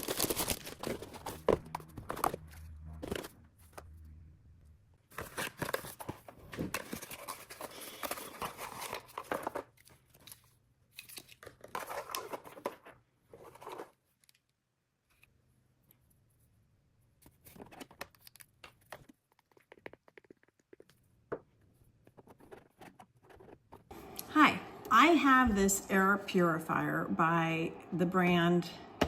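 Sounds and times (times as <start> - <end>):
tearing and crinkling handling: 0.0 - 1.4, 5.1 - 14.4.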